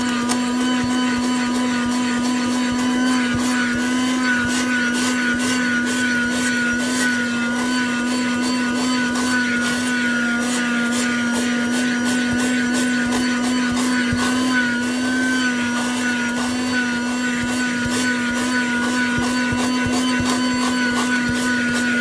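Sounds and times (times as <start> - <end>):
car vacuum motor hum: 0.0 - 22.0
dirt crackling in vacuum nozzle: 0.0 - 22.0.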